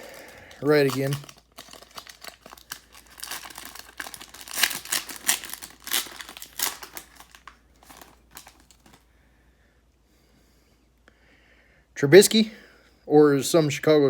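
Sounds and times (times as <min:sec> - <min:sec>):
foil wrapper tearing and crinkling: 0:00.0 - 0:09.0.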